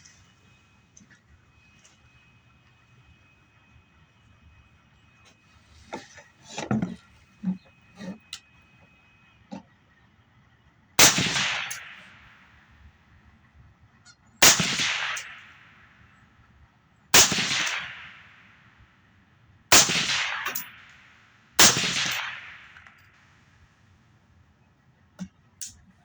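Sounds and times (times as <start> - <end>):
suppressed rifle shots: 11.0 - 12.0, 14.4 - 15.4, 17.2 - 18.2, 19.7 - 20.8, 21.6 - 22.9.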